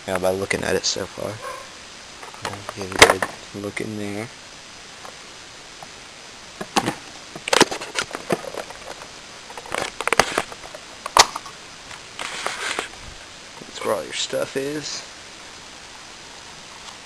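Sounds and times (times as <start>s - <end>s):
short rustle: 7.4s - 13.9s.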